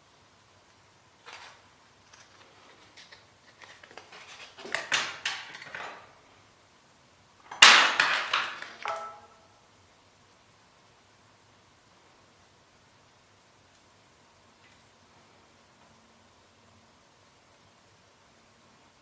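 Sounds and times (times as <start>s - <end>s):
tools clattering on work surface: 7.5s - 9.3s.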